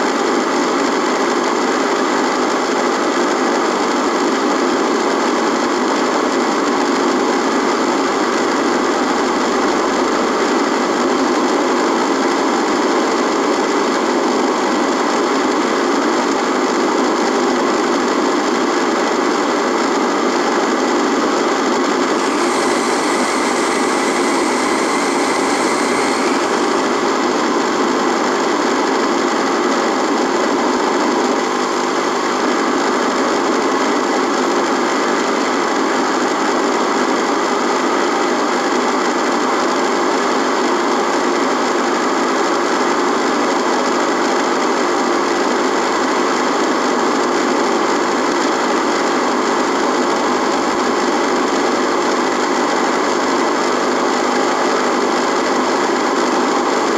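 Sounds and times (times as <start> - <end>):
radio static hiss and buzz: 22.1 - 28.3
steady tones: 22.2 - 28.4.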